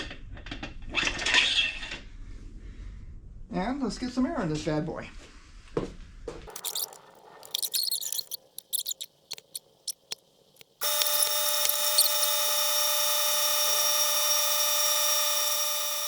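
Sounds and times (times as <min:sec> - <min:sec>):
air chuck clicks and hisses: 0:06.5 - 0:16.0.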